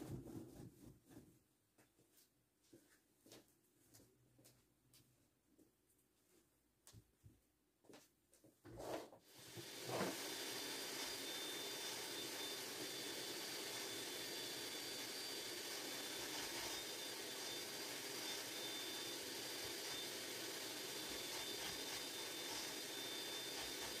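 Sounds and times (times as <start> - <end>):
vacuum cleaner running: 9.3 - 24.0.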